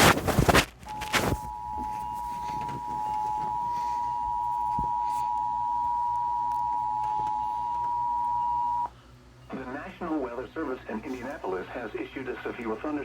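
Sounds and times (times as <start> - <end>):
static bursts: 0.0 - 1.6.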